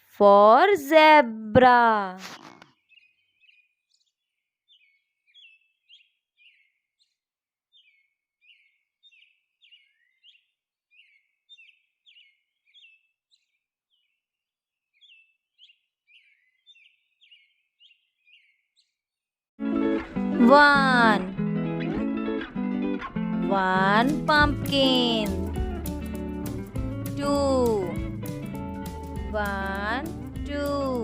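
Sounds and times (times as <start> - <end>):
faint bird chirping: 2.3 - 14.2, 15.0 - 19.0.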